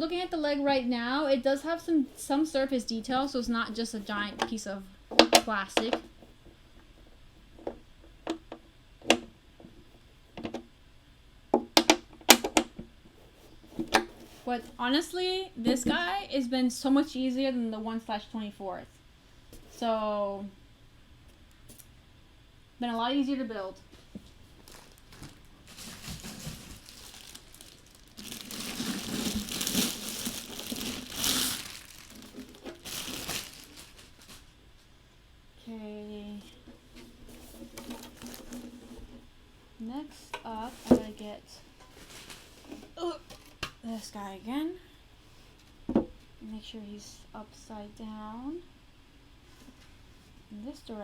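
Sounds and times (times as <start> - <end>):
plastic crinkling and rustling: 24.0 - 34.6, 37.2 - 39.2, 41.8 - 43.6.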